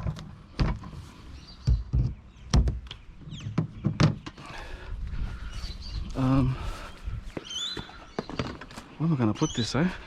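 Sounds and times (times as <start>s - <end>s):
hard objects knocking and clunking: 1.6s - 4.4s.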